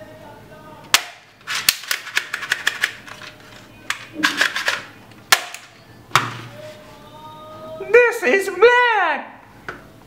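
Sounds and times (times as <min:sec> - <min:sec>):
loud snap: 0:00.9 - 0:02.0, 0:05.3 - 0:06.4
plastic toy gun clicking: 0:01.0 - 0:03.3.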